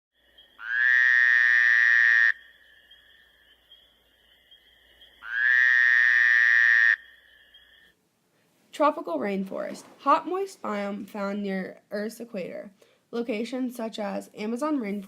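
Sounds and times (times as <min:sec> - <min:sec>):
faint high insect drone: 0:00.2 - 0:08.0
long animal calls: 0:00.4 - 0:07.9.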